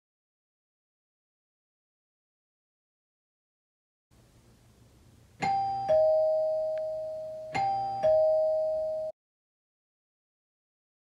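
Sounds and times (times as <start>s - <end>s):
two-tone doorbell chime: 5.4s - 9.2s.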